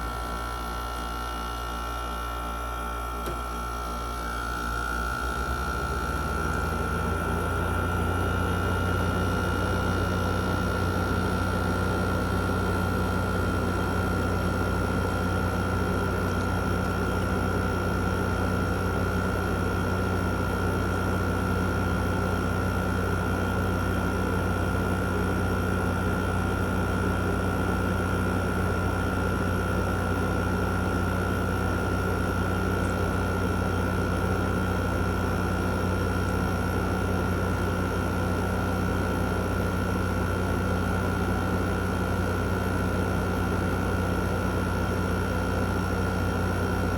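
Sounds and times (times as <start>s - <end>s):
air conditioner fan drone: 0.0s - 46.9s.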